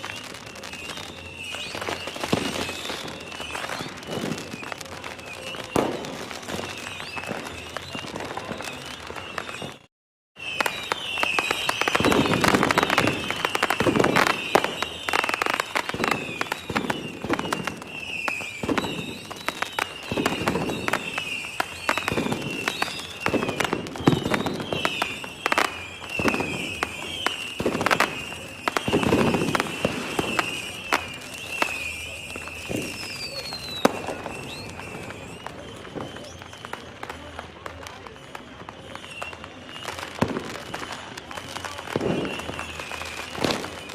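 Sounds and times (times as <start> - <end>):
fireworks bangs and crackling: 0.0 - 43.9
heavy firework booms: 10.5 - 36.3, 41.7 - 43.9.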